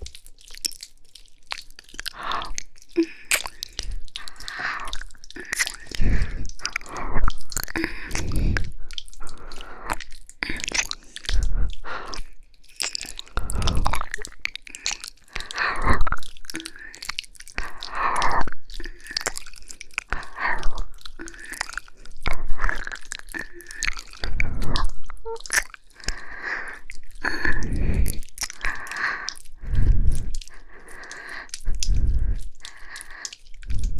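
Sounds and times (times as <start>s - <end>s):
wet mouth sounds of ear licking: 0.0s - 33.9s.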